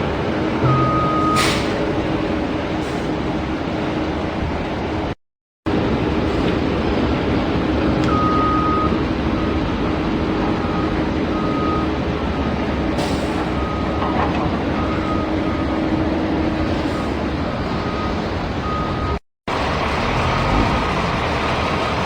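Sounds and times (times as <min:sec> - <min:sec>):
short high-pitched beeps: 0:00.6 - 0:01.5.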